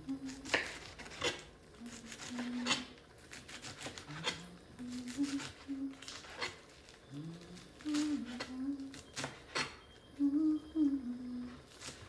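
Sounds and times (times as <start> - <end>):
woman humming: 4.4 - 6.1, 7.1 - 9.0, 10.2 - 11.7.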